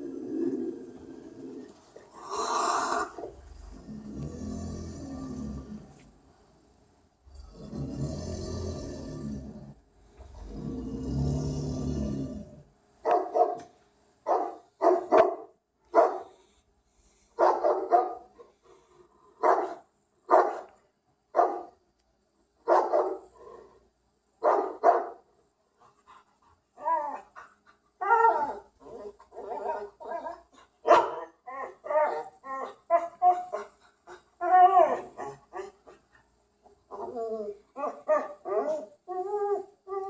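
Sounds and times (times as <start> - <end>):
dog barking: 13.0 - 13.7, 14.3 - 16.3, 17.4 - 18.3, 19.4 - 20.7, 21.4 - 21.8, 22.7 - 23.2, 24.4 - 25.2, 30.8 - 31.4.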